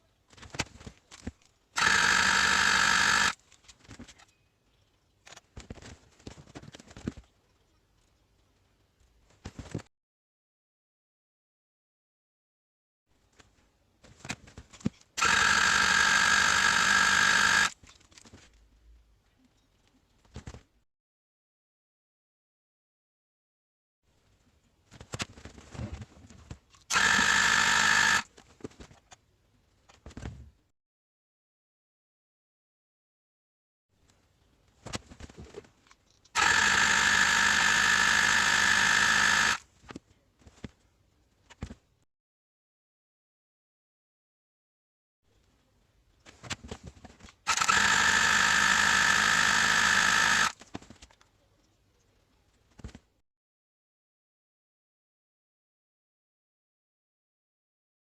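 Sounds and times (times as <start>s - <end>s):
electric starter whirring: 1.8s - 3.4s, 15.2s - 17.8s, 26.9s - 28.3s, 36.4s - 39.6s, 47.5s - 50.6s.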